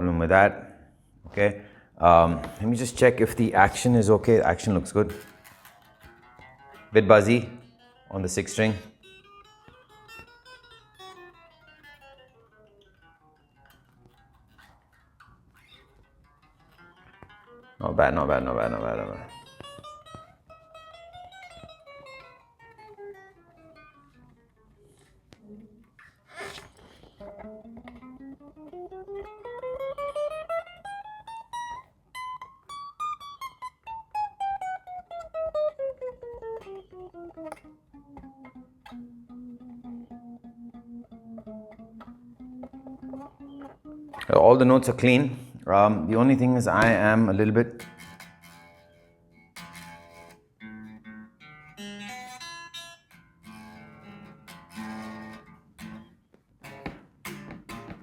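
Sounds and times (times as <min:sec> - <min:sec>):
unplugged electric guitar notes: 0:01.7 - 0:58.0.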